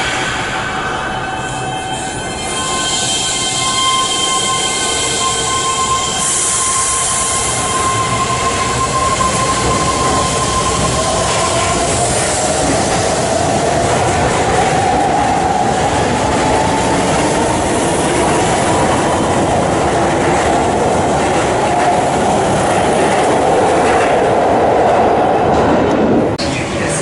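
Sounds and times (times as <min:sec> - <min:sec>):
train whine rising in pitch: 0:00.0 - 0:20.0.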